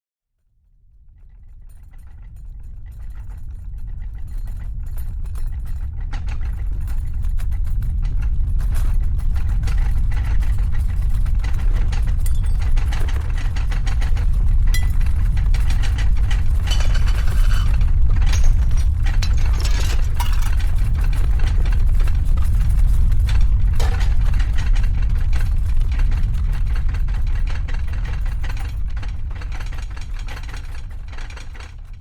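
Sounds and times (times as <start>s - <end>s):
rattling and clattering: 3.1s - 32.0s
deep earthquake rumble: 4.7s - 29.9s.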